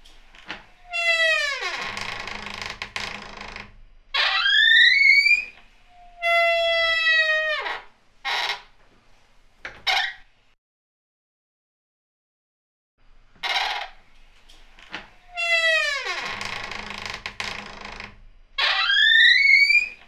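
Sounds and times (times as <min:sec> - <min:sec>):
wooden door hinges creaking: 0:00.3 - 0:05.6, 0:14.8 - 0:20.0.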